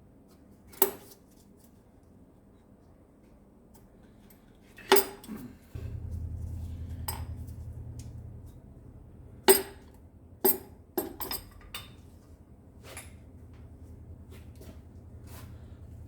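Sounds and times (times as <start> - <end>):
low hum: 5.7 - 16.0
metal tools knocking and clinking: 10.4 - 12.1.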